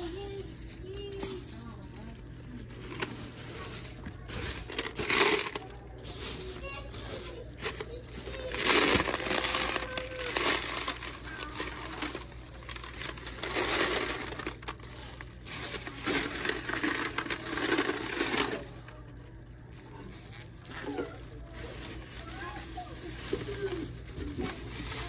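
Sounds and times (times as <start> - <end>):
coins pouring and rattling: 8.4 - 18.8.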